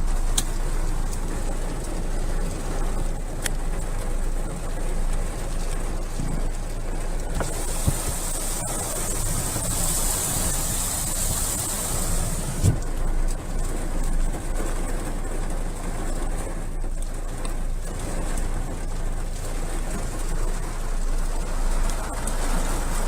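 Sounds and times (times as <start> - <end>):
strong wind buffeting microphone: 7.1 - 13.1.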